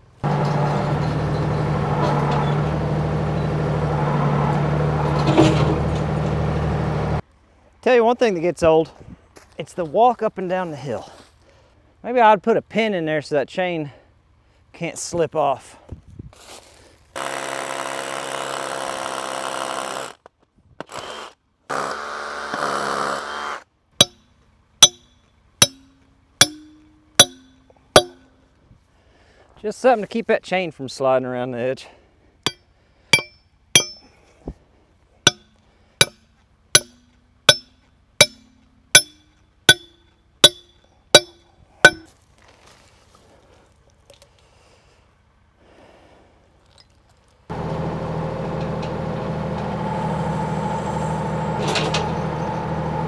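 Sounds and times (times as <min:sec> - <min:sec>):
diesel engine running under load: 0:00.1 - 0:07.2, 0:47.5 - 0:53.0
ringing hammer blows: 0:24.8 - 0:25.0, 0:25.6 - 0:28.2, 0:33.2 - 0:34.1, 0:35.3 - 0:36.2, 0:36.8 - 0:42.1
sharp metallic clank: 0:24.8 - 0:28.3, 0:33.2 - 0:34.1, 0:35.3 - 0:36.2, 0:36.8 - 0:42.1.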